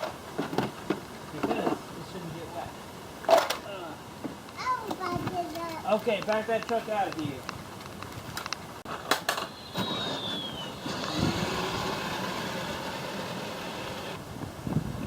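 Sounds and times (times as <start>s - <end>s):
wheels rolling: 0.0s - 14.2s
falling motor whine: 9.2s - 14.2s.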